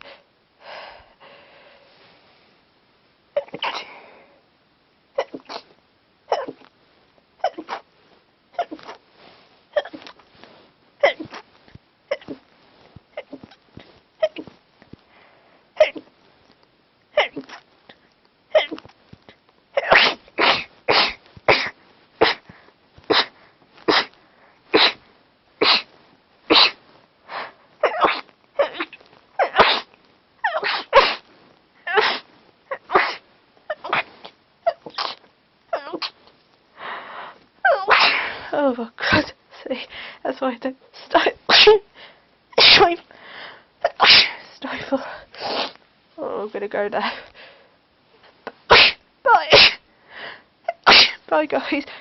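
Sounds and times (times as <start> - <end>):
stifled sneezes: 3.4 - 4.0, 5.2 - 5.7, 6.3 - 6.7, 7.4 - 7.9, 8.5 - 9.0, 9.7 - 10.1, 11.0 - 11.4, 12.1 - 12.4, 13.1 - 13.6, 14.2 - 14.5, 15.8 - 16.1, 17.2 - 17.6, 18.5 - 18.9, 19.8 - 25.0, 25.6 - 25.9, 26.5 - 26.8, 27.4 - 36.2, 37.6 - 39.8, 41.0 - 41.9, 42.5 - 43.1, 43.8 - 45.8, 48.5 - 49.9, 50.7 - 52.0.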